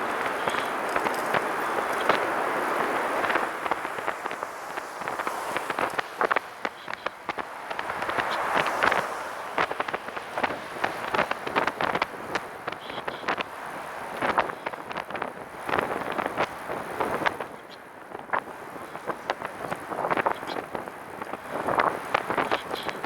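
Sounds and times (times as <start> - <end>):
trike rolling: 0.0 - 13.5
wind noise on microphone: 0.0 - 23.0.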